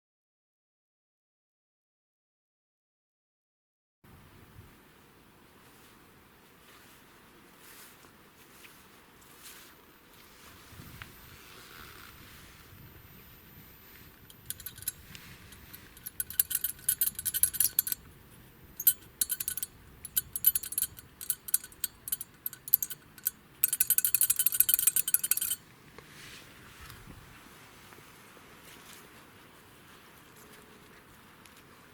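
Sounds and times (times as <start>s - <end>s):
car metallic rattling: 14.3s - 18.0s, 18.8s - 25.6s.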